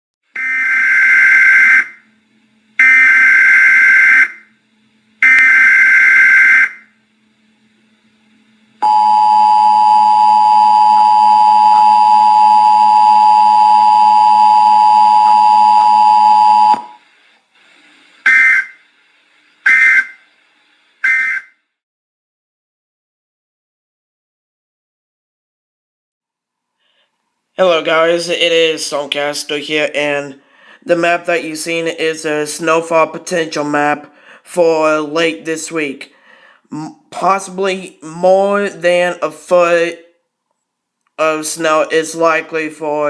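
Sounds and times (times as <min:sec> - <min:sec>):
two-tone attention signal: 0:08.8 - 0:17.0.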